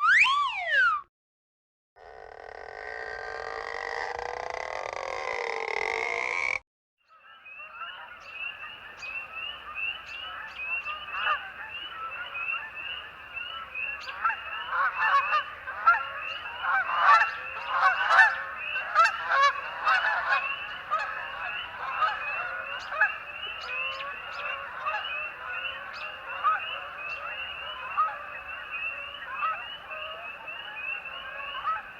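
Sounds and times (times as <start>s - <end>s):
geese honking: 7.8s - 31.9s.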